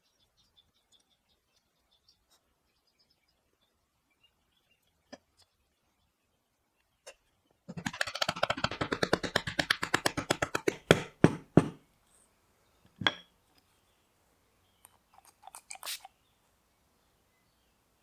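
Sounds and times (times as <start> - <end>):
hand tool strokes on wood: 7.7 - 11.8
heavy knocks on wood: 7.7 - 11.8.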